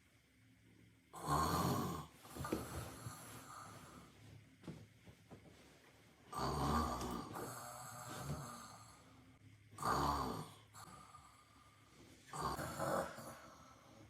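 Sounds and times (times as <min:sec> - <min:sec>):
person snoring: 0:01.1 - 0:04.1, 0:06.3 - 0:14.0.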